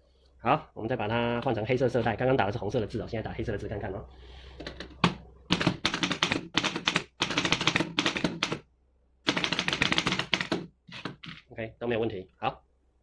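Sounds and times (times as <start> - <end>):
typewriter knock: 4.9 - 8.6, 9.3 - 11.4
typewriter keystrokes: 5.5 - 8.6, 9.3 - 11.4.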